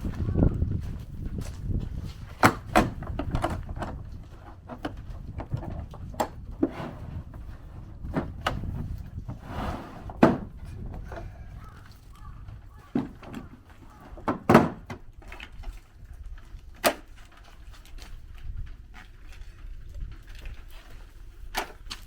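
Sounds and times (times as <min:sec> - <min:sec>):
wood knocking and clattering: 0:02.4 - 0:07.2, 0:10.0 - 0:15.5.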